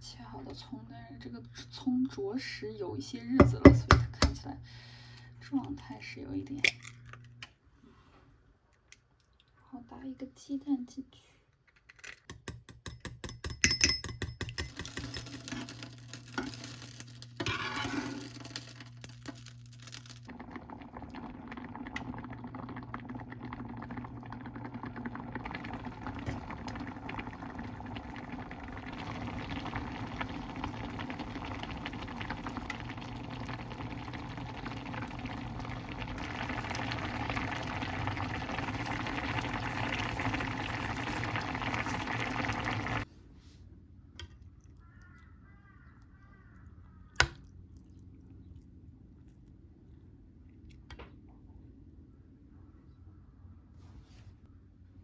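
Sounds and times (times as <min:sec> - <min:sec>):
food bubbling while cooking: 0:17.0 - 0:43.1.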